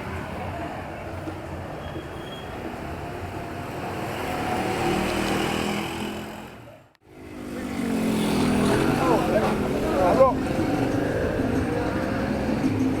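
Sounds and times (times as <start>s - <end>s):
vehicle engine passing: 7.2s - 13.0s.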